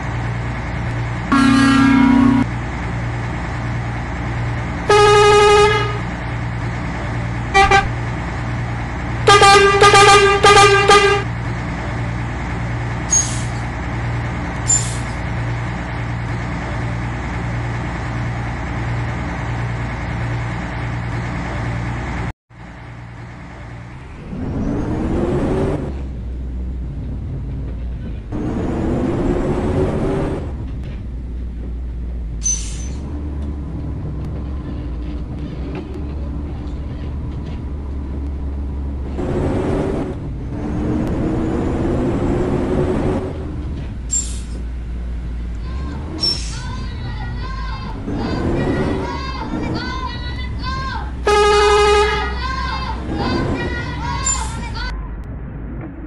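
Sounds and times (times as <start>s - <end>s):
engine rumble: 0.0s - 56.0s
vehicle horn tooting: 1.3s - 2.5s, 4.9s - 6.0s, 7.6s - 7.9s, 9.3s - 11.3s, 51.2s - 52.4s.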